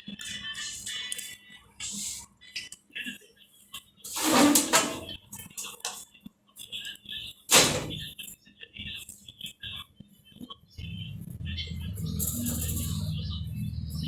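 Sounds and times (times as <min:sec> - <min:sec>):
loud metal clank: 0:04.1 - 0:05.7, 0:07.5 - 0:08.1
rasping scrape: 0:04.1 - 0:06.0.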